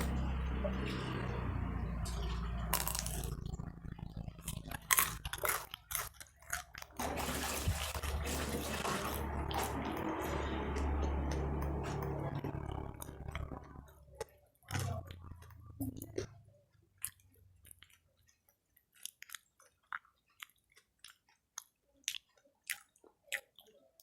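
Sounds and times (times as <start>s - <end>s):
person chewing snacks: 2.1s - 24.0s
low rumble: 7.4s - 14.2s.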